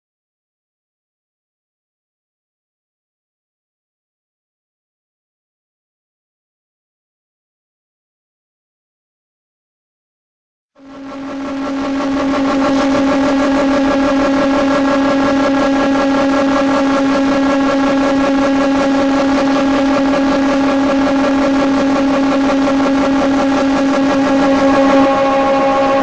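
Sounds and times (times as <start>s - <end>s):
woodworking machine hum-whine: 10.8s - 26.0s.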